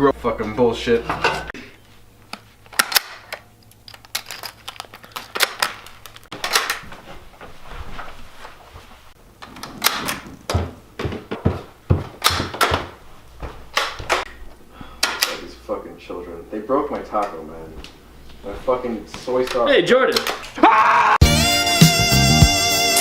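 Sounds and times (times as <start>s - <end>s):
dishes and utensils clattering: 1.1s - 1.6s.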